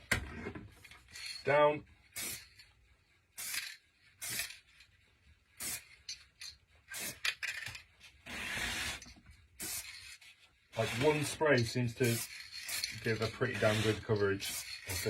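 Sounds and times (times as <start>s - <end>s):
aerosol spray can hissing: 2.1s - 2.6s, 3.4s - 4.6s, 5.6s - 6.1s, 6.9s - 7.3s, 8.3s - 11.4s, 12.0s - 15.0s.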